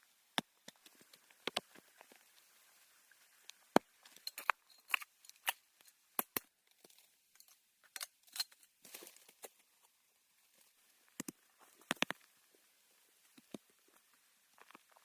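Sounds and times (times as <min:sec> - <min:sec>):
leaves rustling crunch: 0:08.8 - 0:09.6.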